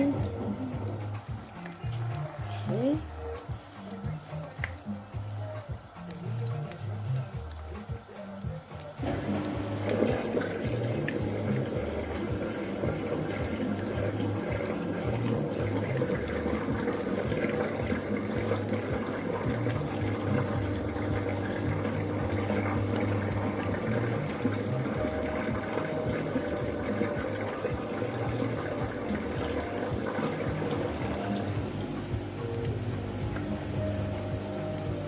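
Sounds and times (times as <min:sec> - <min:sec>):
fritters deep-frying in oil: 0:00.0 - 0:09.0.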